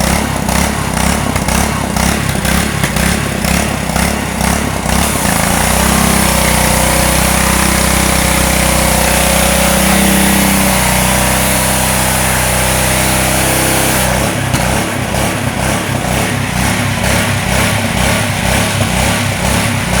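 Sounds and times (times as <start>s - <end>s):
small engine running: 0.0s - 20.0s
high spray hiss: 5.0s - 14.4s.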